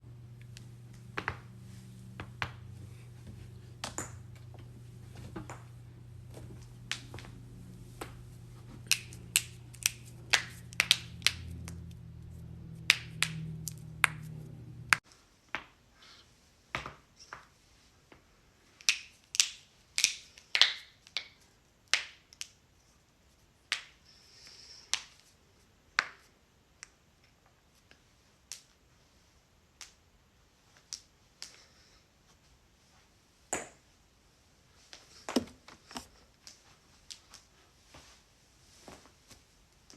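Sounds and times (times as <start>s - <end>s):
low hum: 0.0s - 15.0s.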